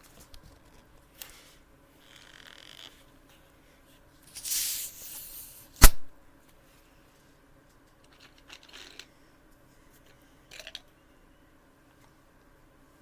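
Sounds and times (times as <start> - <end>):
breathy hiss: 4.4 - 5.8
sharp loud knock: 5.8 - 6.1.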